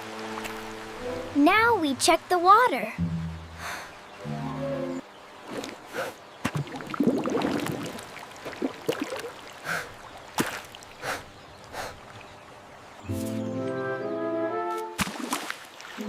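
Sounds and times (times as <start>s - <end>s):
water splashing: 5.4s - 11.0s, 15.0s - 16.0s.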